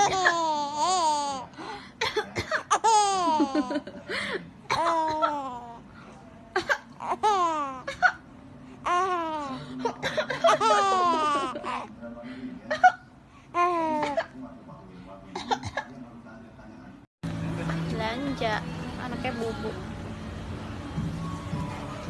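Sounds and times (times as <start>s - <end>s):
baby laughing: 0.0s - 1.4s, 2.7s - 4.0s, 8.9s - 11.9s
adult coughing: 2.0s - 3.0s, 4.3s - 5.4s, 9.8s - 11.2s, 15.3s - 16.0s.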